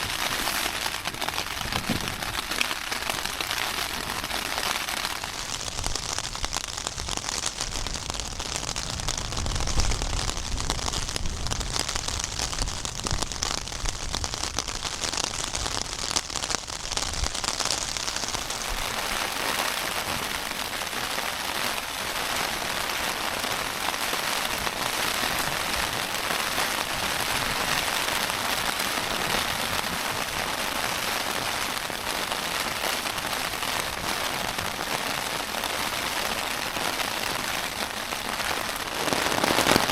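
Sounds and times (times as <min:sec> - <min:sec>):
wind gusts rumbling: 0:00.0 - 0:02.5
heavy rain on tent: 0:00.0 - 0:39.9.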